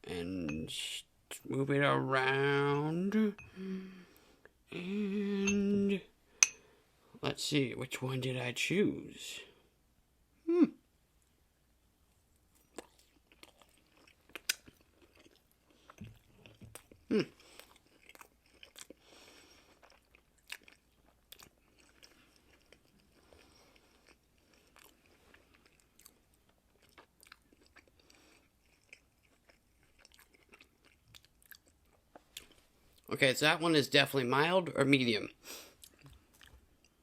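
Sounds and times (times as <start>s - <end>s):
chewing crunchy food: 12.5s - 33.1s, 35.8s - 37.0s.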